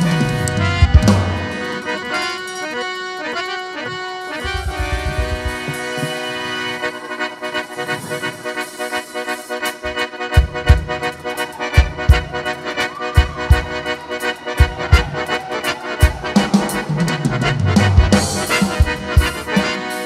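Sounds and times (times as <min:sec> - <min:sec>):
sustained chords: 0:00.0 - 0:09.2
steady beat: 0:00.0 - 0:19.6.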